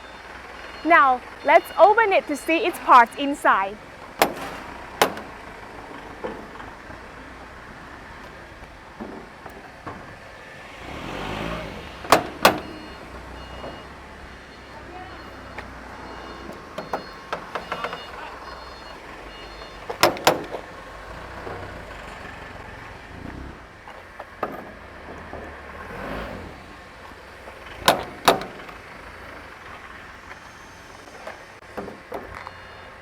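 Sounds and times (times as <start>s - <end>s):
metal latches clicking and knocking: 4.2s - 6.8s, 12.0s - 12.8s, 16.4s - 18.2s, 19.9s - 20.7s, 27.8s - 28.8s.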